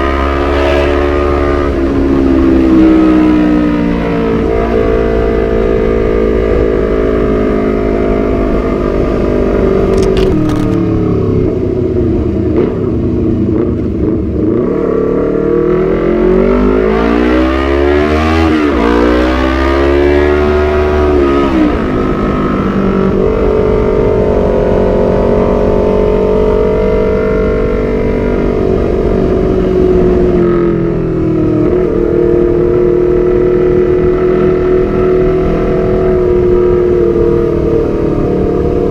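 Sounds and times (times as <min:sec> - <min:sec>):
loud motorcycle engine: 0:00.0 - 0:38.9.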